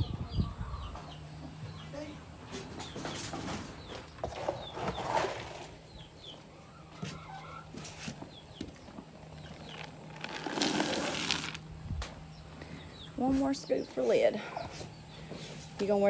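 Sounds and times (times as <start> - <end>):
chickens clucking: 0.0 - 10.4
rustling and clattering: 2.5 - 5.8, 7.8 - 11.7.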